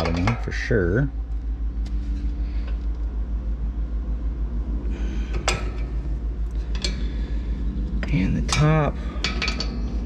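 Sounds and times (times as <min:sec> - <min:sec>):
low rumble: 0:00.0 - 0:10.0
tool clinking on metal: 0:08.0 - 0:09.9.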